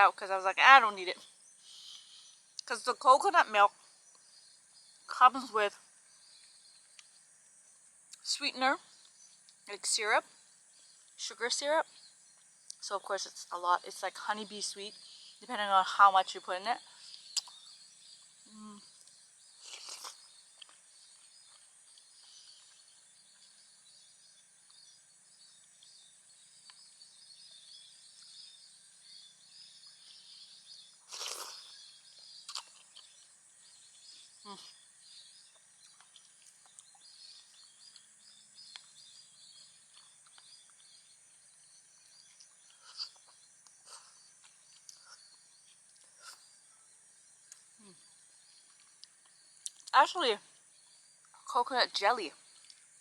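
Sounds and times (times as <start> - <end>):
insect chirring: 0.0 - 53.0
person humming: 18.5 - 18.8.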